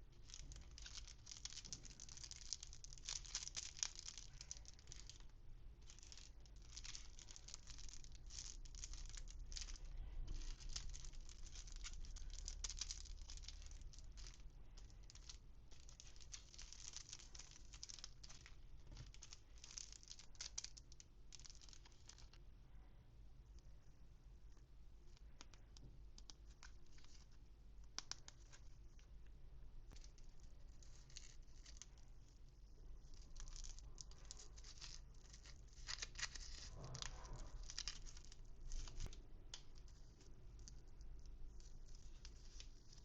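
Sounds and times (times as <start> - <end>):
packaging crinkling: 0.0 - 22.4, 33.1 - 43.0
small rattles: 0.0 - 22.4.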